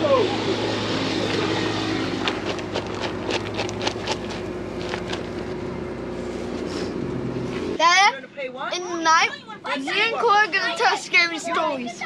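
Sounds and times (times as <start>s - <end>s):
motor humming: 0.0s - 7.2s.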